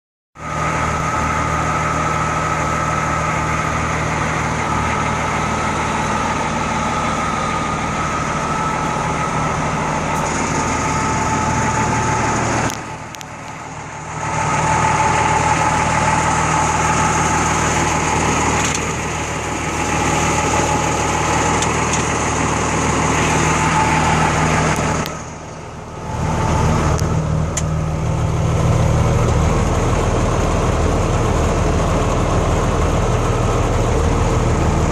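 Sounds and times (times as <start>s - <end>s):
truck engine idling: 0.4s - 34.9s.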